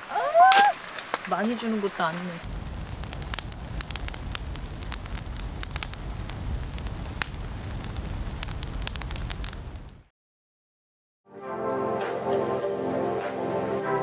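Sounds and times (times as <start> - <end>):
campfire crackling and popping: 0.0 - 10.1
low rush of flame: 2.4 - 10.1.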